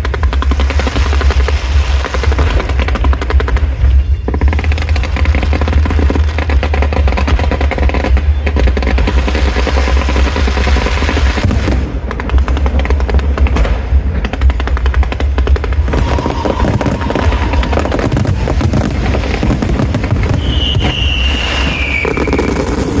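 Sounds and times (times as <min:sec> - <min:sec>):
firecrackers cracking and banging: 0:00.0 - 0:23.0
high descending whistle: 0:15.9 - 0:18.3, 0:20.3 - 0:23.0.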